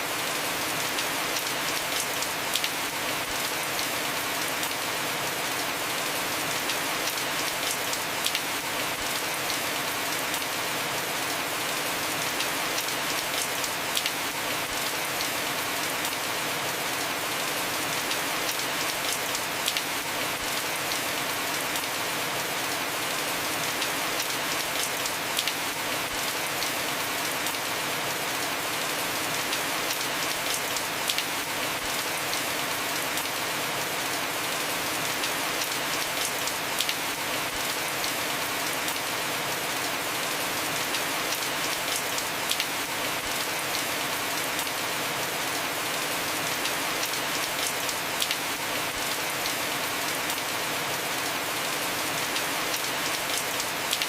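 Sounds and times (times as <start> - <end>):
heavy rain on a roof: 0.0 - 54.0.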